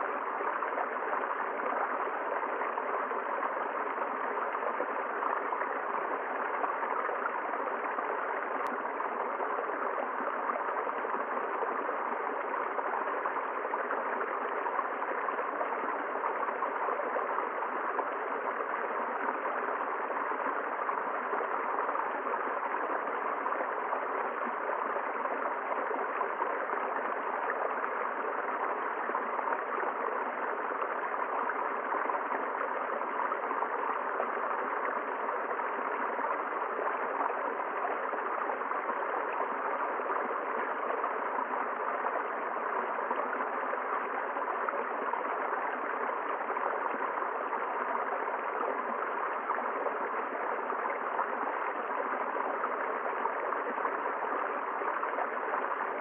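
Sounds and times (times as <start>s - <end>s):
river water flowing: 0.0s - 56.0s.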